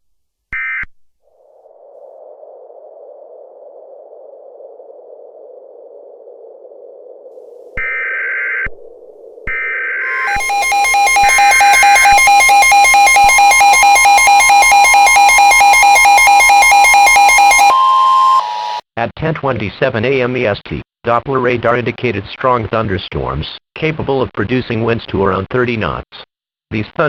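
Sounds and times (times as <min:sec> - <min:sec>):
steady electronic tone: 0:09.6 - 0:18.8
pulsing electronic alert tone: 0:10.0 - 0:18.8
screeching digital data bursts: 0:10.0 - 0:18.8.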